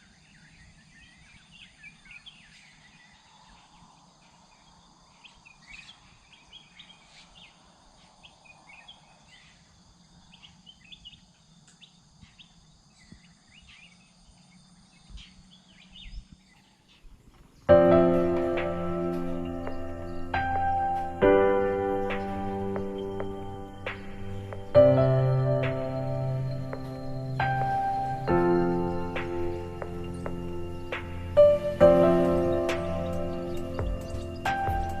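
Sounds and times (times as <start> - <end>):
bird calls and chirps: 0.0 - 35.0
piano music: 17.7 - 35.0.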